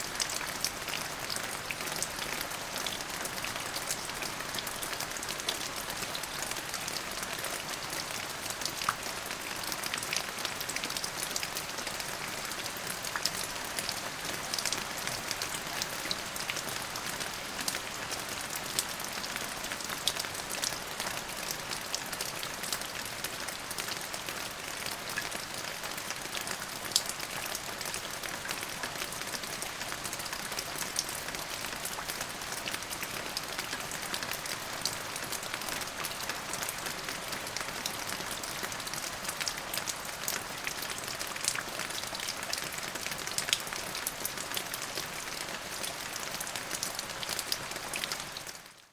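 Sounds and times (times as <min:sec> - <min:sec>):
rain falling: 0:00.0 - 0:48.9.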